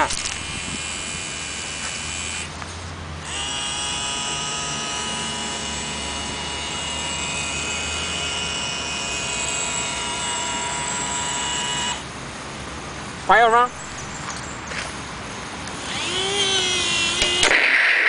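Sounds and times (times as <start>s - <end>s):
electric motors and gears whining: 0.0s - 12.1s, 15.6s - 18.0s.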